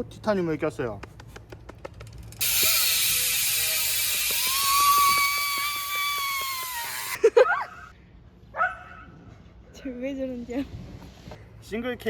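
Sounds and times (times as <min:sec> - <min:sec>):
bicycle hub buzzing: 0:01.8 - 0:07.3.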